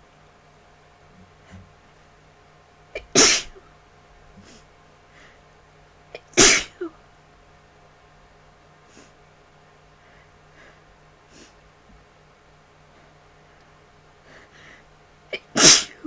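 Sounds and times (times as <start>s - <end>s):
person sneezing: 3.0s - 3.6s, 6.2s - 7.0s, 15.3s - 16.0s.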